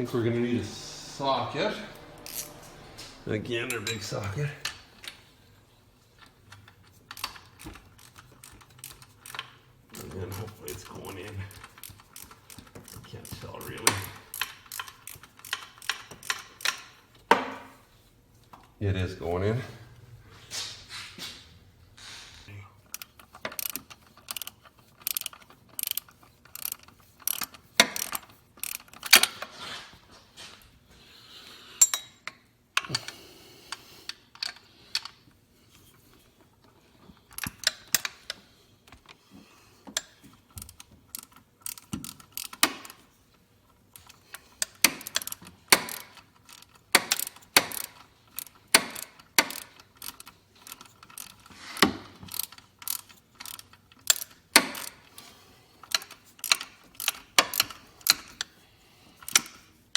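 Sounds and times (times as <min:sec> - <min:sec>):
socket ratchet clicking: 0:06.5 - 0:17.1, 0:22.9 - 0:29.4, 0:37.4 - 0:38.4, 0:39.9 - 0:43.0, 0:43.9 - 0:58.5, 0:59.2 - 0:59.6.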